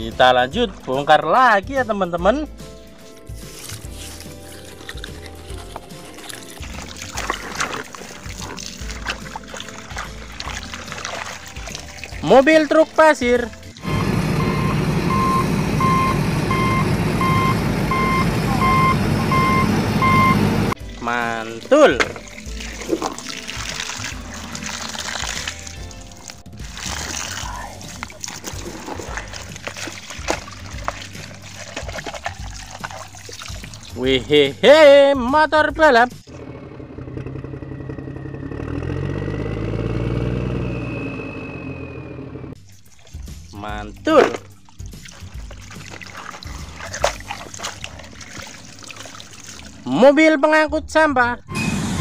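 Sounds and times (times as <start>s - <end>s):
truck engine rumble: 13.1s - 21.2s, 36.2s - 42.6s, 51.4s - 52.0s
truck reversing alarm beeping: 13.8s - 20.8s, 36.3s - 42.6s, 51.4s - 52.0s
motorcycle passing by: 36.3s - 42.6s.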